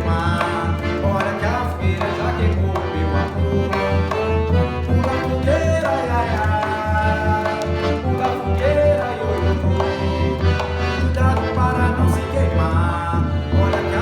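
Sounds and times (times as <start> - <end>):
accordion melody: 0.0 - 14.0.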